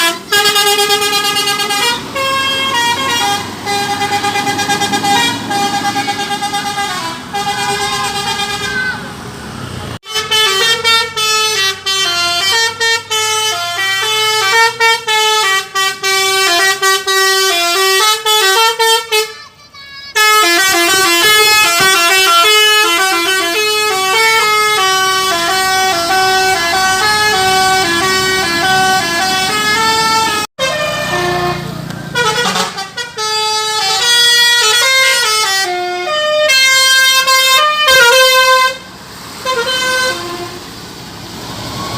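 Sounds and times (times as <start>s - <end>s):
bus air horn playing a tune: 0.0s - 9.0s, 10.0s - 40.7s.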